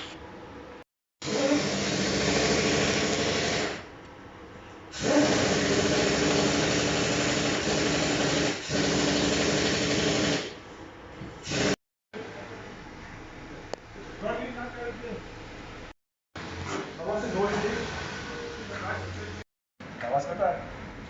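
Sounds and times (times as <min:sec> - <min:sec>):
power tool motor running: 0:05.0 - 0:10.5.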